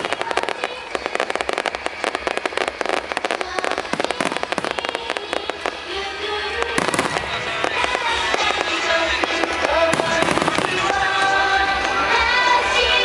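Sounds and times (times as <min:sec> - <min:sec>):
fireworks crackling: 0:00.0 - 0:13.0
music over loudspeakers: 0:00.0 - 0:13.0.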